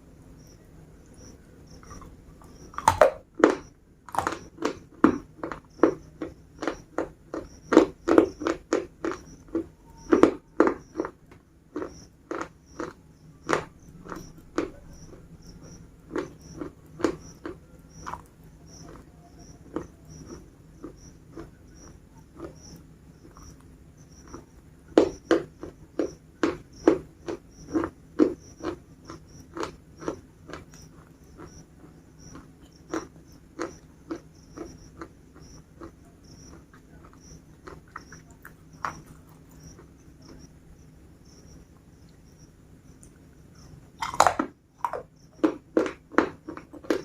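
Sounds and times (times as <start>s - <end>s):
biscuits crunching: 1.2s - 47.0s.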